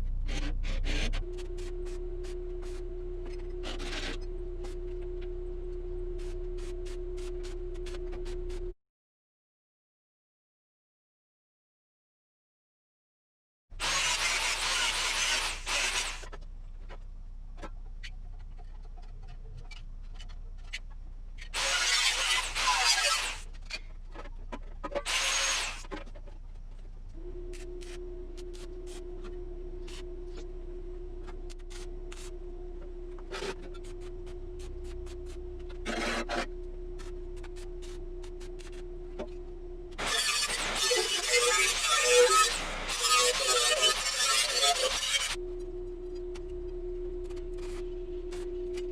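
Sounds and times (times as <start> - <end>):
low steady hum: 0.0 - 8.8, 15.6 - 48.9
tool rasping and rubbing: 0.2 - 4.3, 13.8 - 16.4, 21.5 - 23.8, 25.0 - 26.1, 27.5 - 30.5, 31.2 - 32.4, 33.0 - 45.4.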